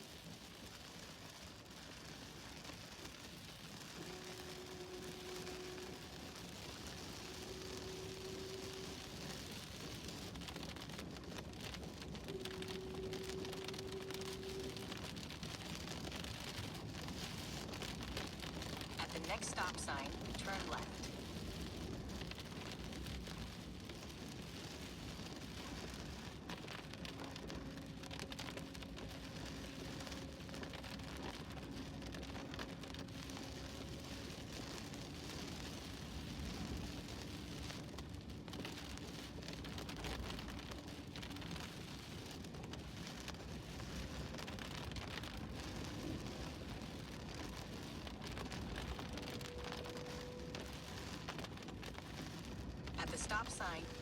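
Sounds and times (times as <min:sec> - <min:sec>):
rain hiss: 0:00.0 - 0:54.0
faint hum: 0:03.7 - 0:23.5, 0:47.4 - 0:54.0
wet road noise: 0:30.8 - 0:53.8.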